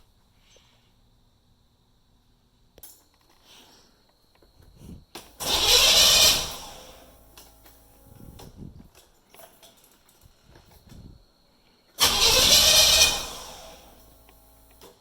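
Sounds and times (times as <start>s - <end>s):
car engine cranking without starting: 5.4s - 7.2s, 12.0s - 14.6s.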